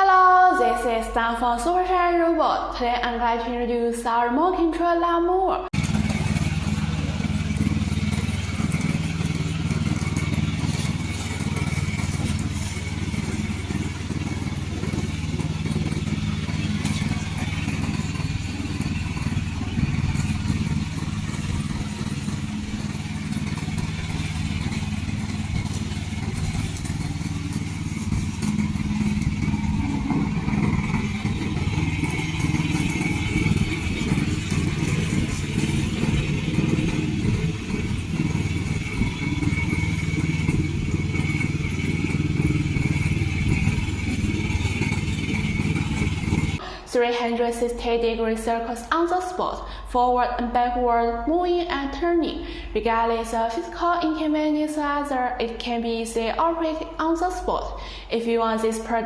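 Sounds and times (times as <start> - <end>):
lawn mower engine droning: 5.7 - 46.9.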